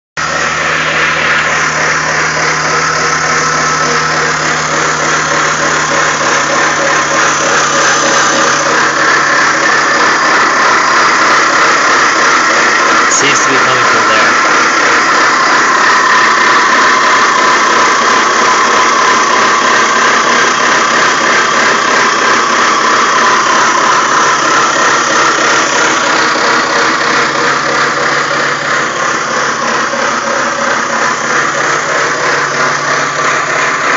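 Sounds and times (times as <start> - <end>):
grinding and squealing noise: 0.2 - 33.9
car engine hum: 13.1 - 16.2.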